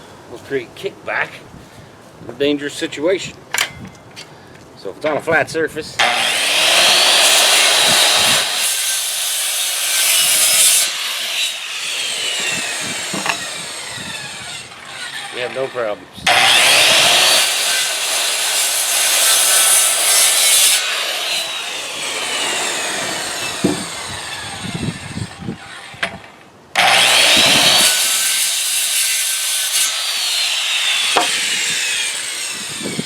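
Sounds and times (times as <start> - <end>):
circular saw cutting wood: 6.0 - 26.2, 26.8 - 33.0
knocks on wood: 23.6 - 23.9.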